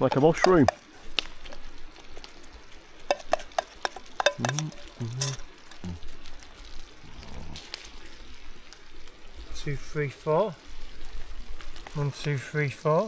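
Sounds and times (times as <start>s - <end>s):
faint sizzle: 0.0s - 13.0s
metal utensil scraping a pan: 3.1s - 5.5s.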